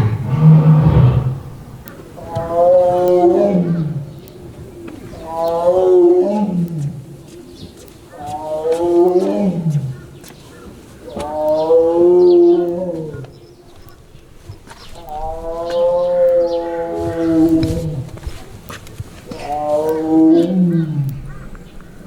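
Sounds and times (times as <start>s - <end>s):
big cat roaring: 0.0s - 4.1s.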